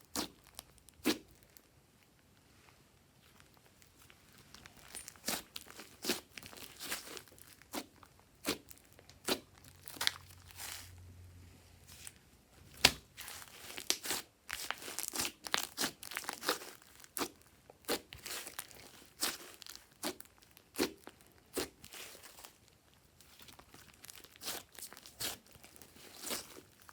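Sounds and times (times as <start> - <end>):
slime squished by hand: 0.0 - 1.6, 3.4 - 10.9, 12.7 - 26.9.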